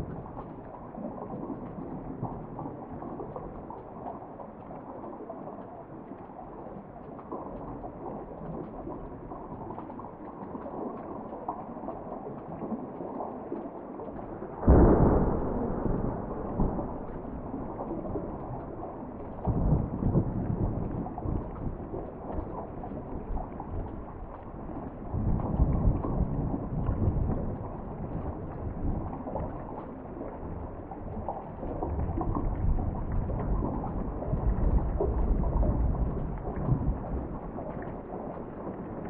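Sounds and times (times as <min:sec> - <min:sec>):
steady rain: 0:00.0 - 0:39.0
deep rumble: 0:14.2 - 0:29.4.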